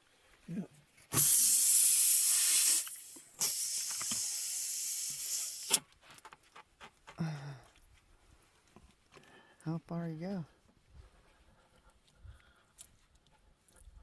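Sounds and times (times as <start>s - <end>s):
pressurized air hissing: 1.1s - 5.8s.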